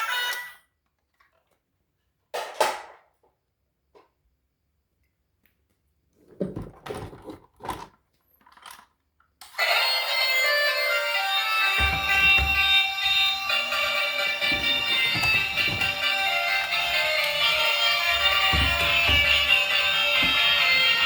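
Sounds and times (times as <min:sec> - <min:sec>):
plastic toys clattering: 0:06.6 - 0:09.1, 0:11.8 - 0:21.0
background music: 0:09.8 - 0:21.0.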